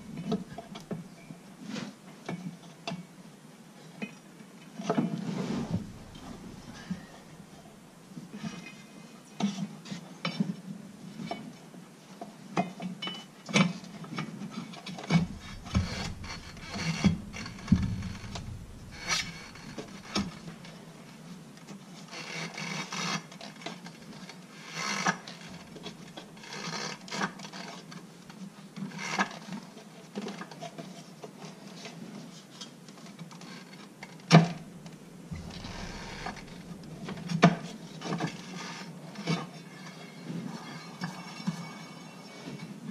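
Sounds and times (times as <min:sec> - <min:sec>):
rubbing rasping sound: 0:15.2 - 0:20.4, 0:35.3 - 0:37.2.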